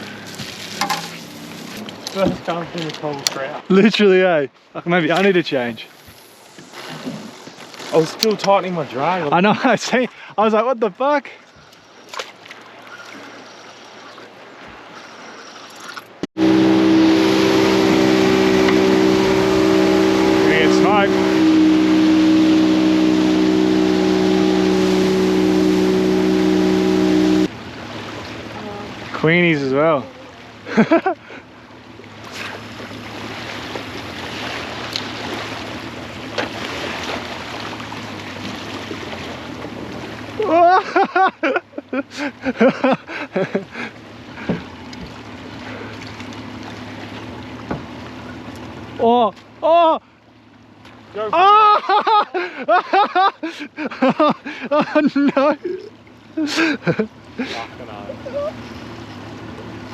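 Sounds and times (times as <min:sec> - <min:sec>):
boat motor hum: 0:00.0 - 0:04.2, 0:11.4 - 0:59.9
water noise: 0:00.0 - 0:59.9
outdoor wind: 0:11.4 - 0:55.1
loud engine humming: 0:16.4 - 0:29.1.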